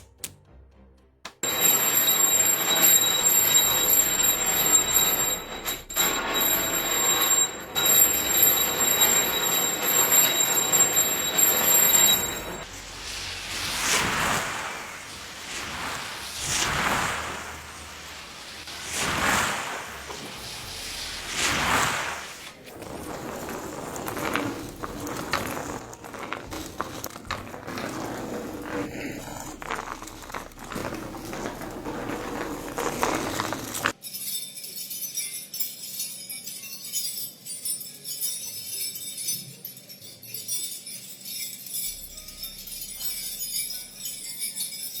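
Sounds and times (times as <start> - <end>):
whooshes: 12.6 - 25.3.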